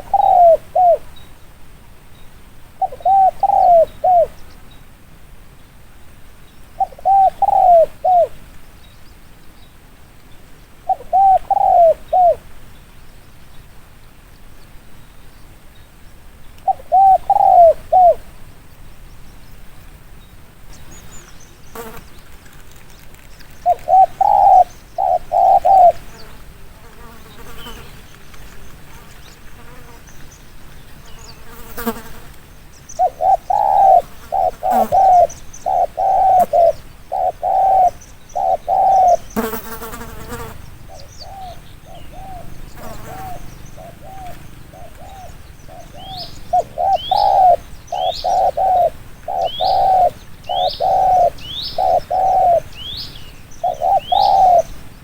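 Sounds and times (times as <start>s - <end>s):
dove cooing: 0.0s - 1.1s, 2.8s - 4.4s, 6.8s - 8.4s, 10.9s - 12.5s, 16.7s - 18.3s, 23.6s - 26.3s, 33.0s - 54.8s
noisy rustle: 18.3s - 25.0s, 25.9s - 33.0s.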